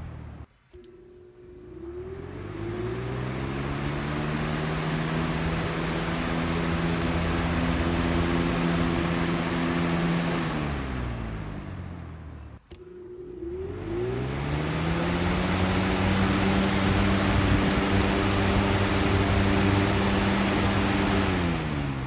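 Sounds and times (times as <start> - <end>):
box fan humming and whirring: 0.0 - 22.0.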